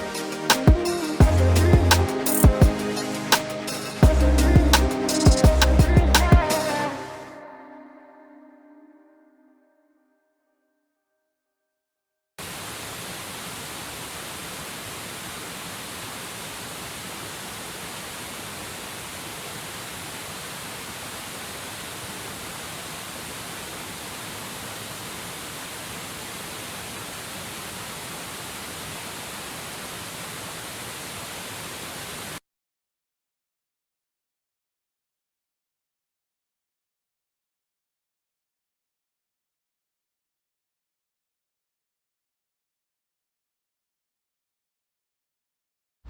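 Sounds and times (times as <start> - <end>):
steady rushing hiss: 0.0 - 7.0, 12.4 - 32.4.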